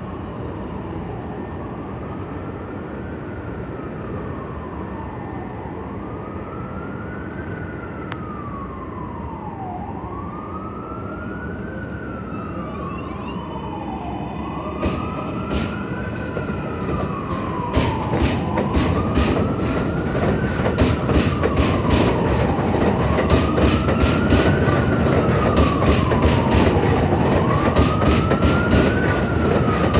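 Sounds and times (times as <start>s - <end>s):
siren wailing: 3.2s - 29.9s
train wheels clicking over rail joints: 14.6s - 29.9s.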